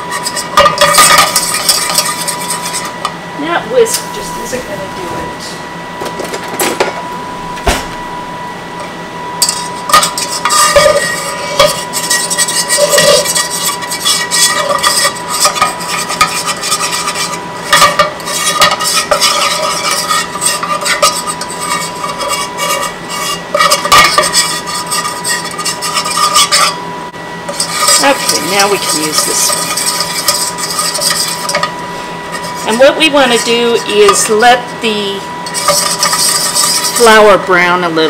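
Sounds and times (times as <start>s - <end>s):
utensil stirring and scraping a pan: 0.0s - 3.2s, 8.7s - 38.0s.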